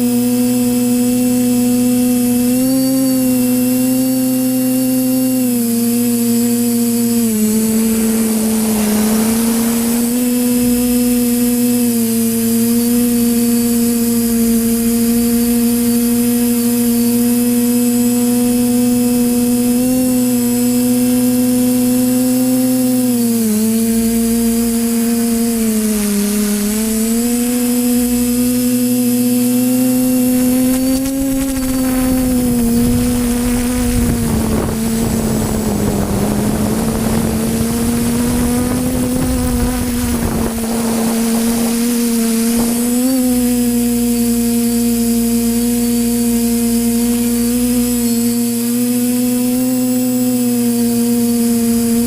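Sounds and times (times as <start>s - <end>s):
quadcopter motors whining: 0.0s - 52.0s
rushing air noise: 6.2s - 12.2s, 29.6s - 43.6s.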